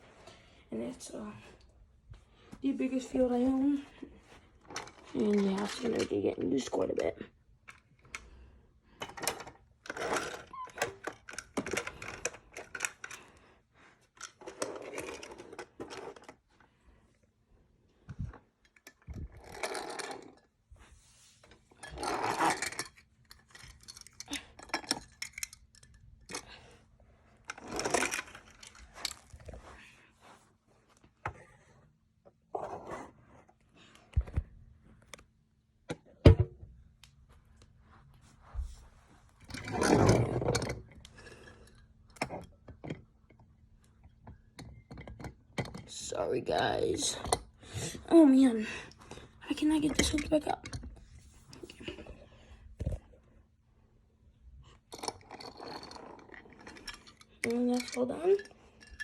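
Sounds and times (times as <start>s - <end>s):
plastic toys clicking and rattling: 4.7s - 8.3s, 9.0s - 13.4s, 14.1s - 16.4s, 21.7s - 26.6s, 27.4s - 29.6s, 39.5s - 43.4s, 44.6s - 48.6s, 49.5s - 52.1s, 54.9s - 59.0s.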